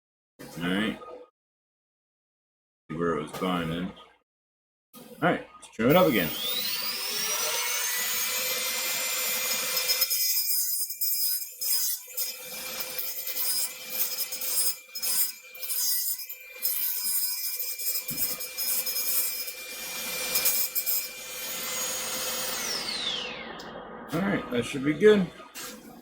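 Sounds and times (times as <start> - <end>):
rotary tool whining: 5.9 - 24.2.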